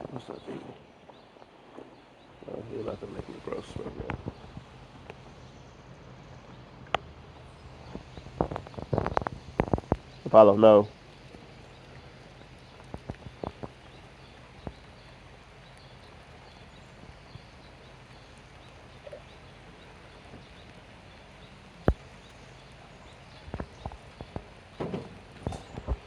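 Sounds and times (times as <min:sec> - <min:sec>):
paws and claws clicking: 0:11.9 - 0:13.8.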